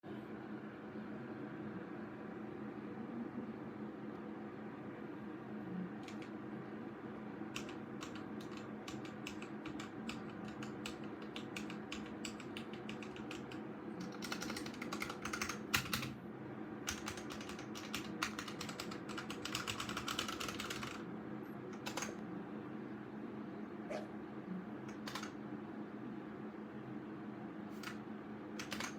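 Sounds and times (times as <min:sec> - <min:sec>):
mechanical keyboard typing: 0:06.0 - 0:06.3, 0:07.5 - 0:16.2, 0:16.9 - 0:21.0, 0:21.8 - 0:22.2, 0:24.9 - 0:25.3, 0:28.6 - 0:28.9.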